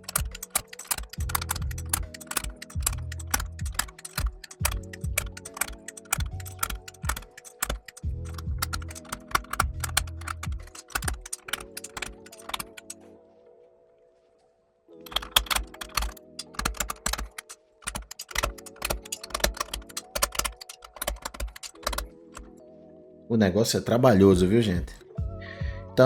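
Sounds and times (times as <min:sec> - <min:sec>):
background music with pulsing bass: 0:00.0 - 0:12.8, 0:24.3 - 0:26.0
plastic keycaps clicking: 0:00.0 - 0:13.0, 0:15.0 - 0:22.6.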